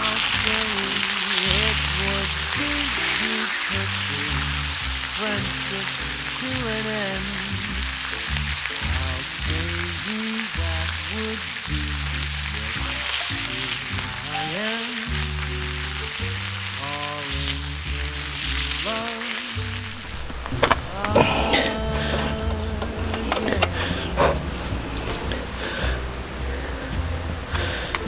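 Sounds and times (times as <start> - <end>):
meat sizzling on griddle: 0.0 - 21.6
background music: 0.0 - 28.0.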